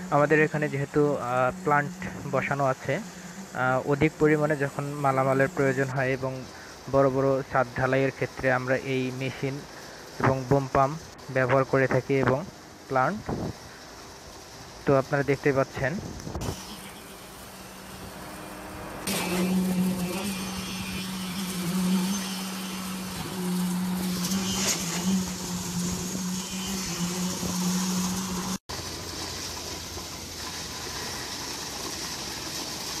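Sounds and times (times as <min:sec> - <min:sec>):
lower machine drone: 0:00.0 - 0:06.2, 0:16.3 - 0:32.6
pitched machine drone: 0:00.0 - 0:06.5, 0:16.4 - 0:28.6.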